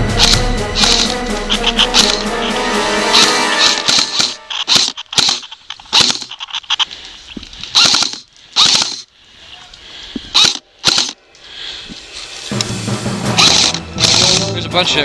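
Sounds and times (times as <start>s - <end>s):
rapid clicks: 0.1s - 2.4s, 13.3s - 14.5s
airsoft guns firing bursts: 7.7s - 9.0s, 13.3s - 14.4s.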